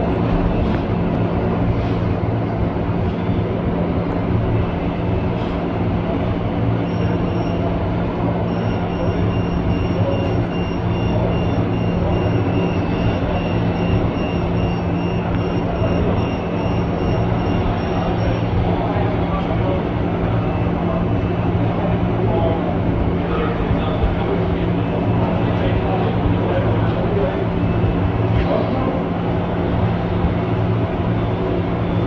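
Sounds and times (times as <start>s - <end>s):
high electronic beeping: 6.7s - 19.0s.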